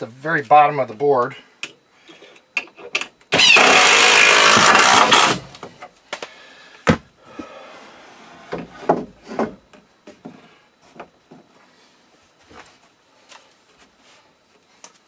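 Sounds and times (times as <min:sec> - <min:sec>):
heavy wooden thuds: 0:06.8 - 0:07.1
wooden knocks and clunks: 0:06.8 - 0:07.1, 0:08.4 - 0:11.5.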